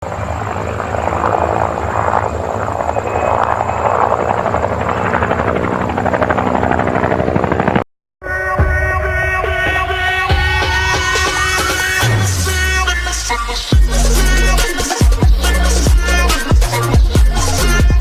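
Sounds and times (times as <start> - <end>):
helicopter rotor chopping: 0.0 - 7.9, 9.4 - 18.0
music: 8.2 - 18.0.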